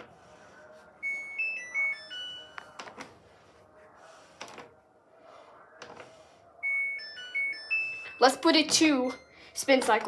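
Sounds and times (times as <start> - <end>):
electronic beep melody: 1.0 - 2.7, 6.6 - 8.2.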